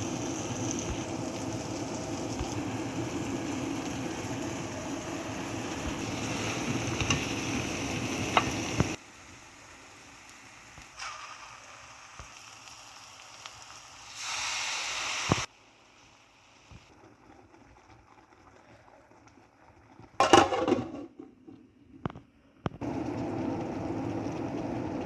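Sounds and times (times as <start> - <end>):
pot hissing: 0.0 - 19.0.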